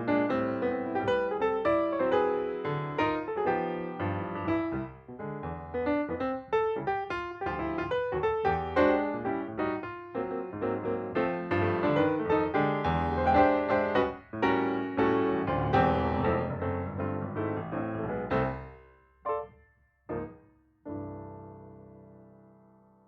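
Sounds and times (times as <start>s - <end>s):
piano music: 0.0s - 23.0s.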